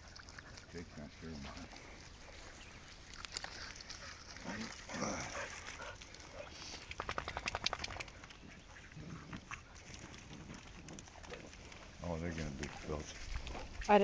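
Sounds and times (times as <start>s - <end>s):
dogs splashing in muddy water: 0.0s - 14.0s
sharp clicks: 6.9s - 8.4s.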